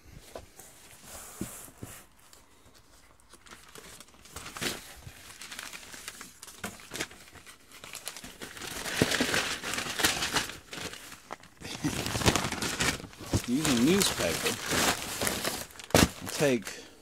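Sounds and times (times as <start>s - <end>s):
newspaper crumpling: 3.1s - 16.7s.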